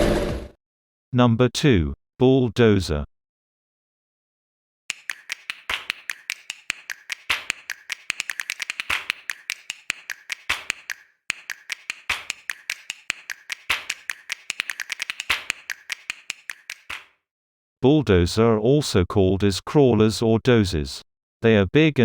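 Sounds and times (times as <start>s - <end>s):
keyboard typing clicks: 4.9s - 17.1s.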